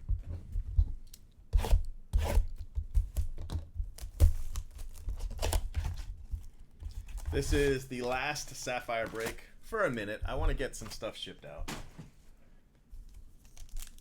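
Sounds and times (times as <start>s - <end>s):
wrapper tearing and crinkling: 4.1s - 6.1s, 13.4s - 14.0s.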